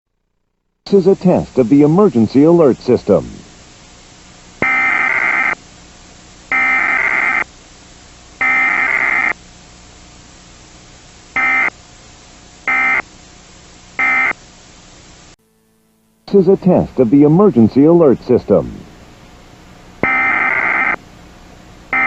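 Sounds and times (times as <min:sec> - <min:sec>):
steady hiss: 0:00.9 - 0:22.0
buzzing digital data bursts: 0:04.6 - 0:05.6, 0:06.5 - 0:07.5, 0:08.4 - 0:09.4, 0:11.4 - 0:11.8, 0:12.7 - 0:13.1, 0:14.0 - 0:14.4, 0:20.0 - 0:21.0.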